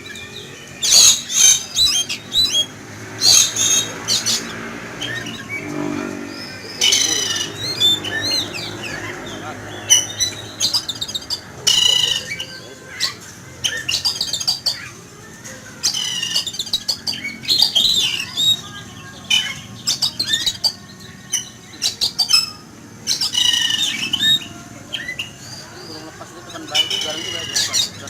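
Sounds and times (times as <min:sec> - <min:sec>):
bird squawking: 0:00.0 - 0:15.0, 0:15.8 - 0:28.0
bird singing: 0:00.0 - 0:28.0.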